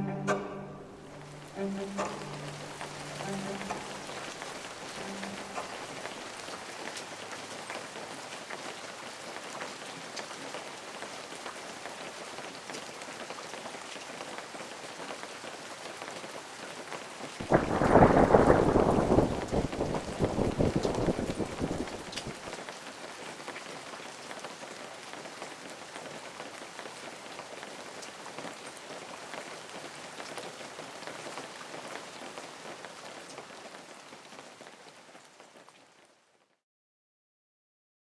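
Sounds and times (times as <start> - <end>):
rain falling: 0.0 - 36.6
deep crackling rush: 17.4 - 22.3.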